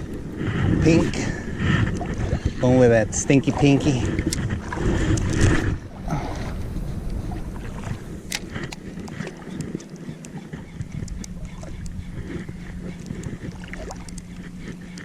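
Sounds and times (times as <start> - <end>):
steady low hum: 0.0 - 15.0
water splashing and lapping: 0.0 - 15.0
wind buffeting microphone: 0.0 - 15.0
small clicks: 8.3 - 12.0, 12.8 - 15.0.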